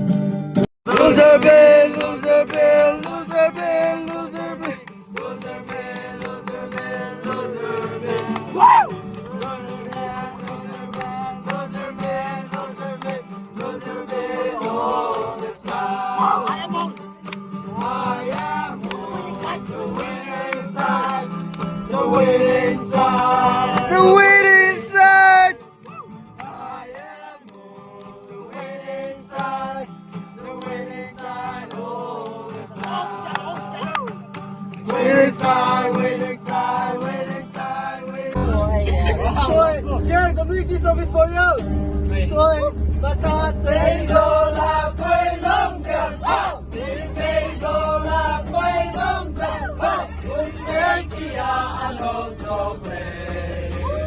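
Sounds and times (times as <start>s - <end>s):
person singing: 0.9s - 4.8s, 21.9s - 27.0s, 34.9s - 38.6s
steady drone: 26.0s - 54.0s
low hum: 38.3s - 54.0s.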